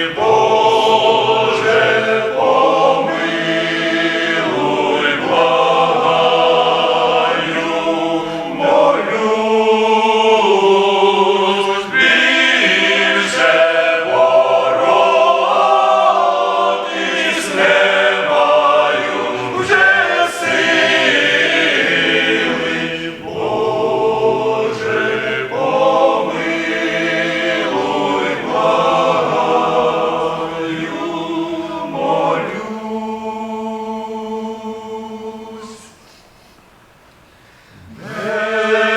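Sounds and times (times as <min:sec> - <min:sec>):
men's choir singing hymn: 0:00.0 - 0:36.2, 0:37.8 - 0:38.9.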